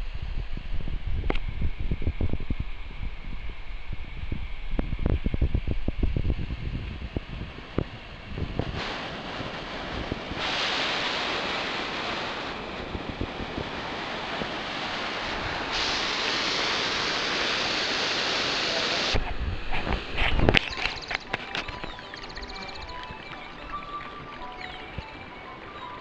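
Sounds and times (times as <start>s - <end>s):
waterfall rushing: 8.7s - 19.2s, 20.4s - 26.0s.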